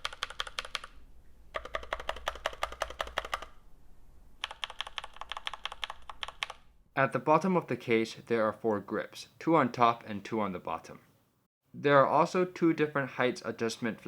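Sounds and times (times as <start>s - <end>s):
typing on mechanical keyboard: 0.0s - 0.9s, 1.6s - 3.6s, 4.4s - 6.6s.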